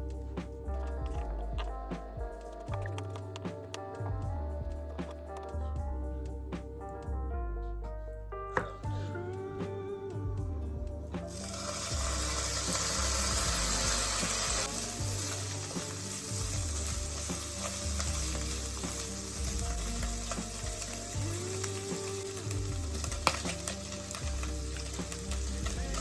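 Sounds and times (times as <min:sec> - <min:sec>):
food sizzling in frying pan: 0:11.3 - 0:26.0.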